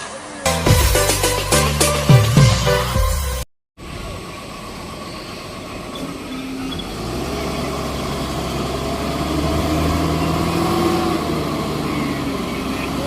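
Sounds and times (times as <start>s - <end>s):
vehicle engine idling: 3.8s - 10.5s, 11.2s - 13.0s.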